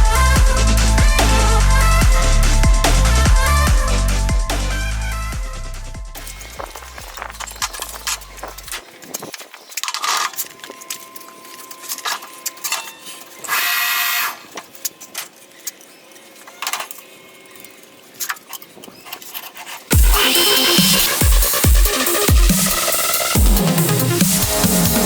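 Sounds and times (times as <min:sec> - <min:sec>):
electronic music with heavy beat: 0:00.0 - 0:08.8, 0:19.9 - 0:25.0
metal tools clinking: 0:06.2 - 0:13.6, 0:14.4 - 0:20.0
harsh noisy burst: 0:19.9 - 0:25.0.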